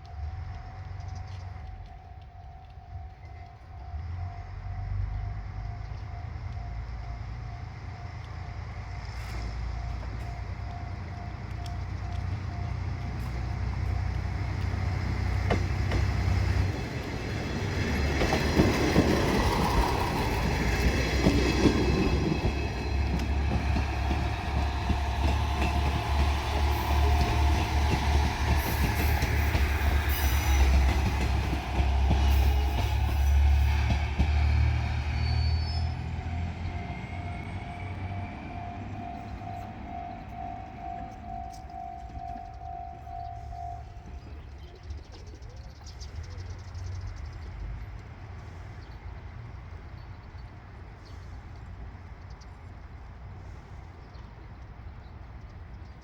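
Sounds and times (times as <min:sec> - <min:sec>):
diesel engine rumbling: 0:00.0 - 0:49.9
train wheels on rails: 0:00.0 - 0:56.0
level crossing bell ringing: 0:36.3 - 0:44.4.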